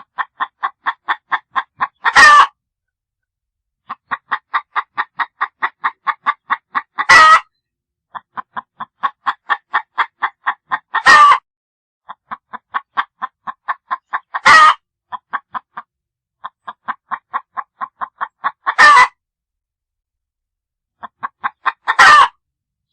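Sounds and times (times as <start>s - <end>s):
chicken clucking: 0.0s - 2.6s, 3.8s - 11.4s, 12.0s - 19.2s, 21.0s - 22.4s
chicken squawking: 0.2s - 2.5s, 3.9s - 7.5s, 8.1s - 11.4s, 12.1s - 15.8s, 16.4s - 19.2s, 21.0s - 22.4s.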